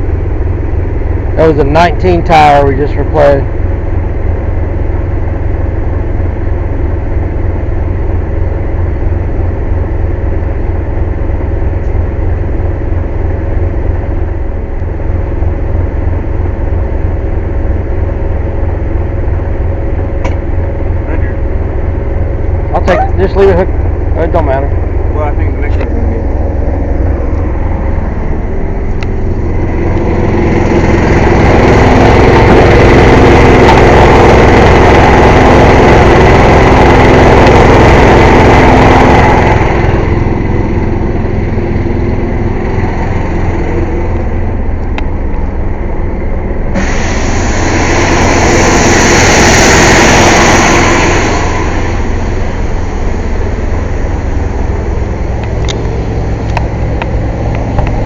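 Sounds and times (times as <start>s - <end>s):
air compressor engine running: 0.0s - 58.0s
air hissing: 46.7s - 56.5s.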